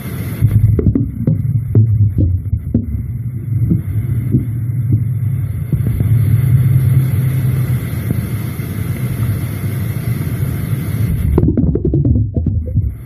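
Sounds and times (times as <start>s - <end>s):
low underground rumble: 0.0s - 13.0s
irregular crackling knocks: 0.4s - 6.2s, 11.3s - 13.0s.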